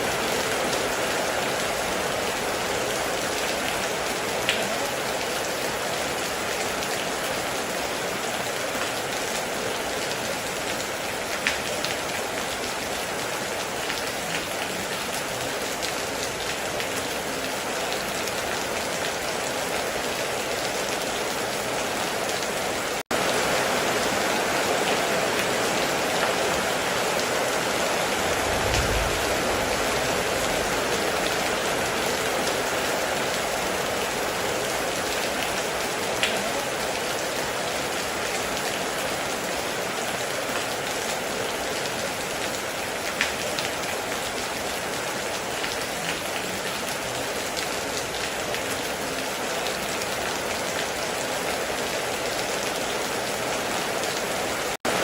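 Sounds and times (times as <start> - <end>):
heavy rain on a metal roof: 0.0 - 55.0
low rumble: 28.2 - 30.9.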